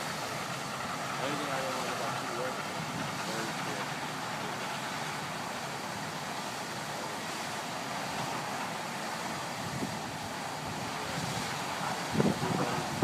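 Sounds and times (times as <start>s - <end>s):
surf breaking on beach: 6.8s - 13.0s.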